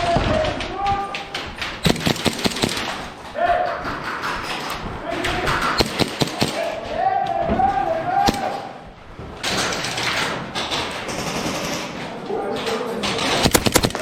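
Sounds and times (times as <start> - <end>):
airsoft gun crack: 1.1 - 3.2, 5.6 - 6.8, 8.2 - 8.7, 13.3 - 14.0
people calling out: 6.2 - 8.9.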